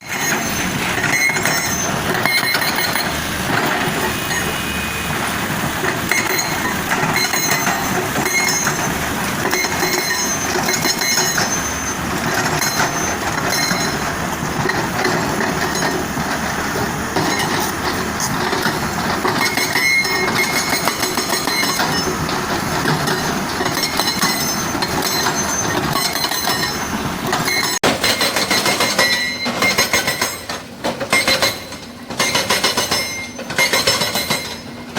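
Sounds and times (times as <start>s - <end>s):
excavator engine running: 0.0s - 34.9s
hydraulic breaker hammering: 5.6s - 34.9s
metallic clanking: 17.2s - 34.9s.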